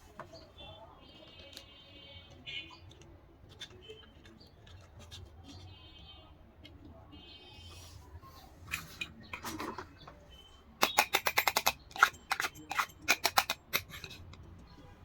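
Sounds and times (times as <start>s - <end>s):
small pieces clicking and tapping: 10.8s - 14.7s.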